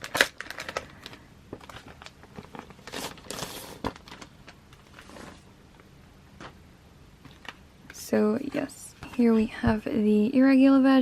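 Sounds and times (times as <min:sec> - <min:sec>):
plastic sleeve tearing and crinkling: 0:00.0 - 0:05.5.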